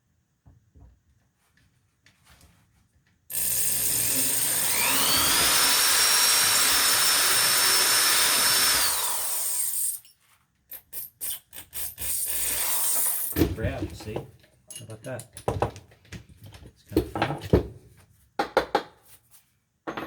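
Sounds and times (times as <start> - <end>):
electric drill whine: 3.3 - 10.1.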